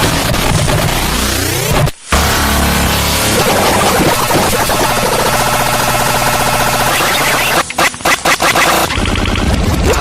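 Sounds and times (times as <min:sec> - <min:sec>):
distorted emergency alert tones: 0:03.1 - 0:09.0.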